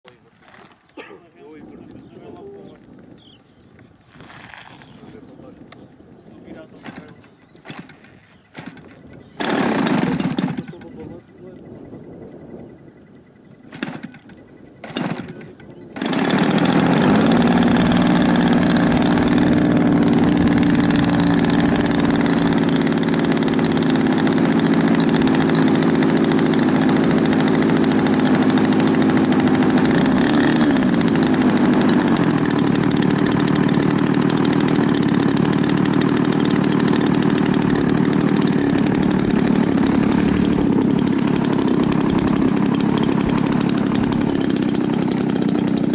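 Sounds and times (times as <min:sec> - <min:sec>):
engine coughing: 0:00.9 - 0:01.4
model plane engine running: 0:06.4 - 0:45.9.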